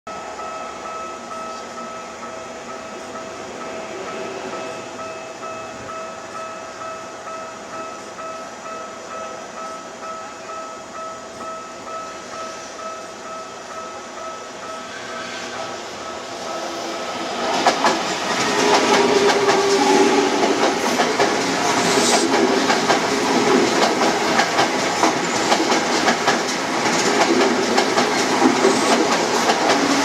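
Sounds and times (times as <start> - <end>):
level-crossing warning bell ringing: 0.1 - 17.4
commuter train running: 0.1 - 30.0
train wheels beating over rail joints: 16.0 - 30.0.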